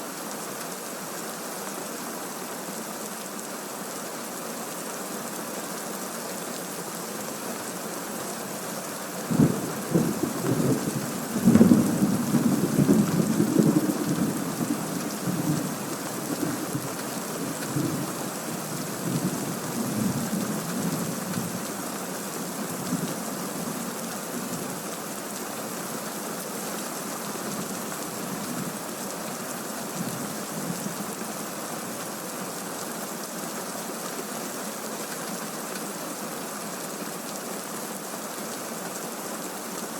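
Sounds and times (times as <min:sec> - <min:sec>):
steady rain: 0:00.0 - 0:39.9
rumbling thunder: 0:09.3 - 0:16.9.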